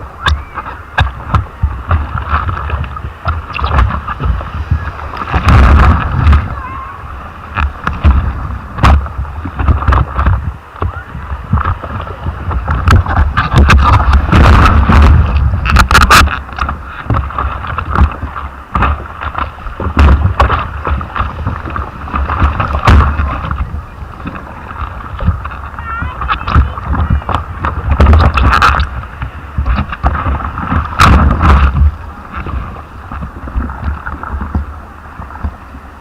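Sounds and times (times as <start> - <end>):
wind buffeting microphone: 0.0 - 36.0
knocks and clicks: 12.5 - 32.6.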